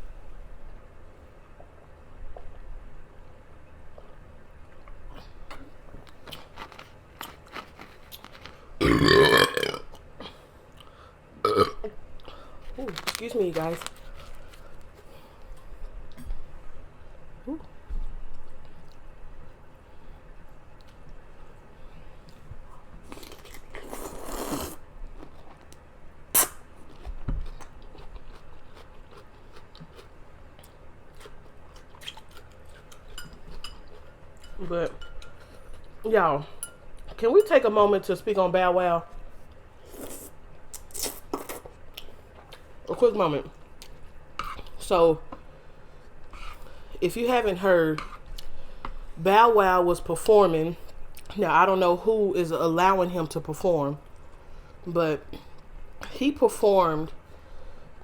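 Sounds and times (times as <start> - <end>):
loud burp: 8.8 - 9.9, 11.4 - 11.8
close chewing with wet clicks: 26.8 - 34.1.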